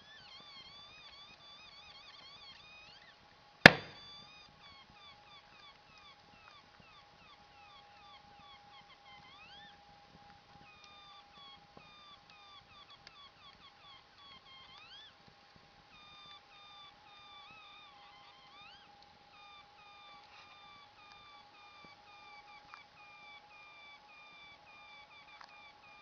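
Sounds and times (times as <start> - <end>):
firewood cracking: 3.7 - 4.0
burning firewood chirping: 3.7 - 4.1.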